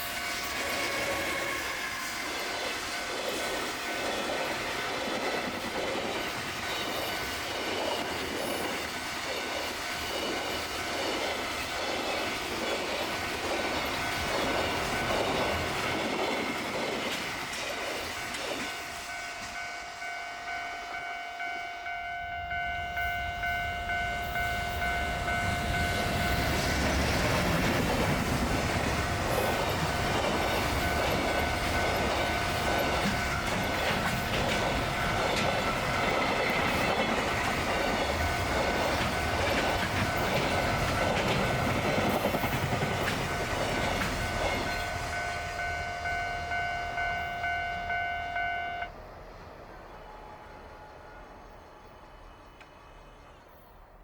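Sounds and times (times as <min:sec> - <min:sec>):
freight wagons clacking on rails: 0:00.0 - 0:19.7, 0:22.6 - 0:48.0
steady high tone: 0:14.0 - 0:48.9.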